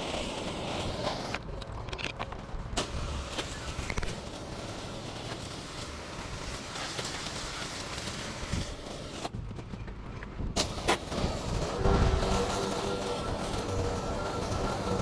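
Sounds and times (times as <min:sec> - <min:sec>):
motor running: 0:11.1 - 0:15.0.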